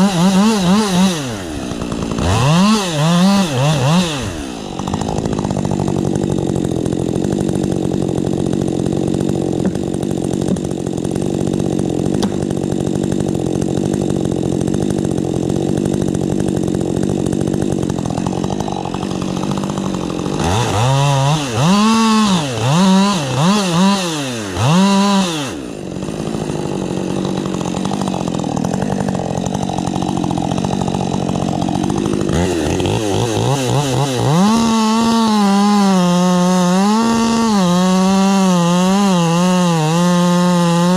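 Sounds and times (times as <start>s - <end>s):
chainsaw revving: 0.0s - 40.9s.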